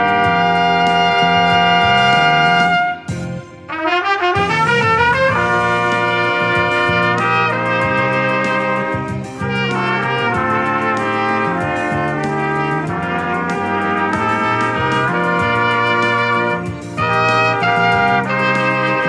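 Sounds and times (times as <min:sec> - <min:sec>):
karaoke backing track: 0:00.0 - 0:19.0
trumpets playing in harmony: 0:00.0 - 0:19.0.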